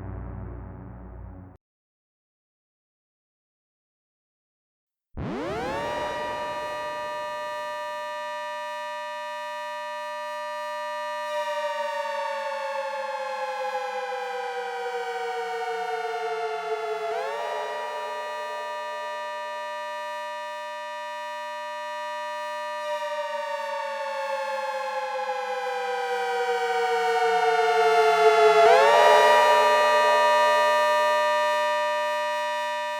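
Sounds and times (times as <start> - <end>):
synthesized siren: 0.0 - 1.6, 5.2 - 7.7.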